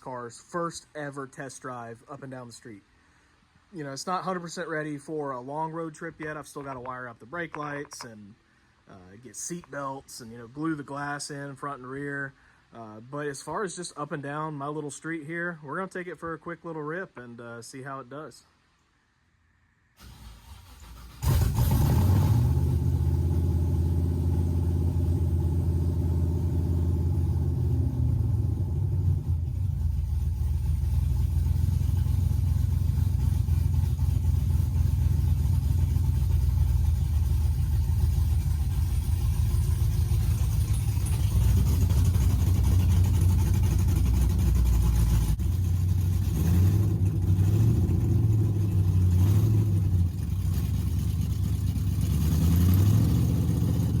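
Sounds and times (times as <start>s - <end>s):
car engine running: 20.0s - 54.0s.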